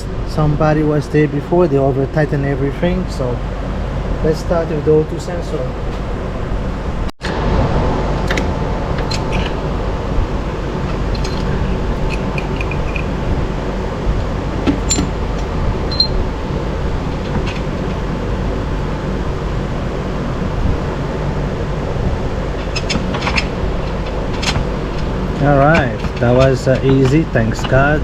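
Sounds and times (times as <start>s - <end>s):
steady background hum: 0.0s - 28.0s
hand tools clicking: 11.1s - 13.1s, 22.6s - 27.8s.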